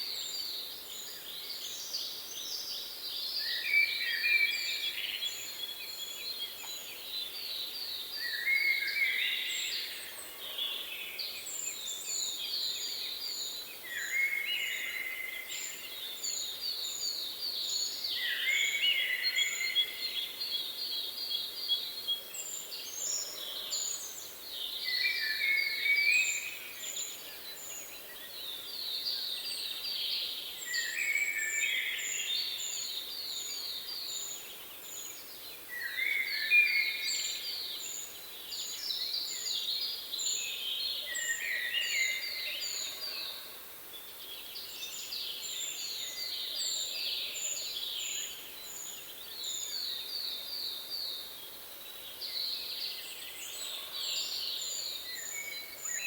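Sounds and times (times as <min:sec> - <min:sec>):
songbirds singing: 0:00.0 - 0:56.0.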